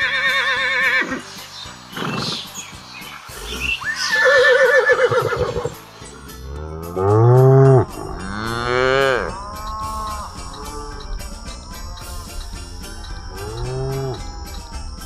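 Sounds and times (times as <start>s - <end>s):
background music: 0.0s - 15.0s
high wavering animal call: 3.5s - 5.8s, 7.0s - 15.0s
cow mooing: 6.5s - 11.1s, 13.4s - 14.2s.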